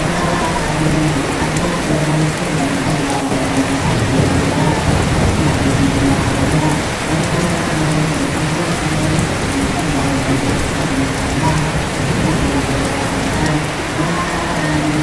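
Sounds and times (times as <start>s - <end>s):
person chanting faintly: 0.0s - 15.0s
steady rain hiss: 0.0s - 15.0s.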